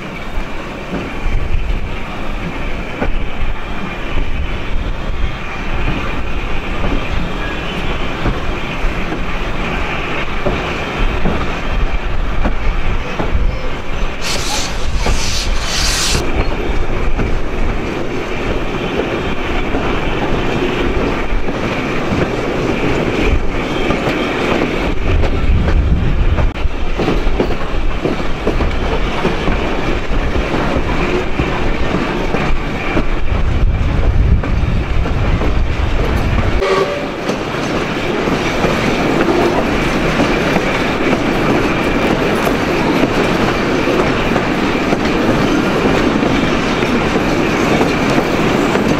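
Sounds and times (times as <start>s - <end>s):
low rumble of train: 0.0s - 14.2s, 16.2s - 48.9s
train rail noise: 0.0s - 25.8s, 35.5s - 48.9s.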